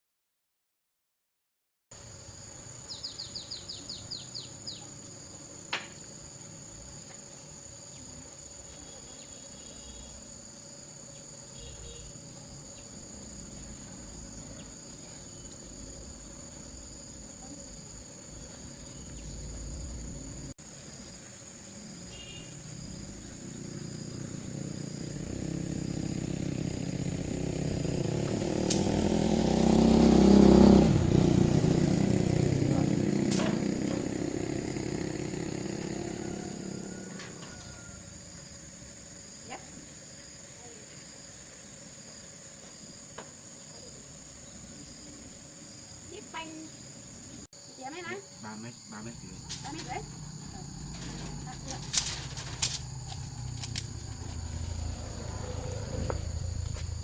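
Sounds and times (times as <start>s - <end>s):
high-pitched insect drone: 2.0s - 57.0s
insect chirps: 2.0s - 57.0s
motor engine: 23.4s - 37.7s, 49.6s - 57.0s.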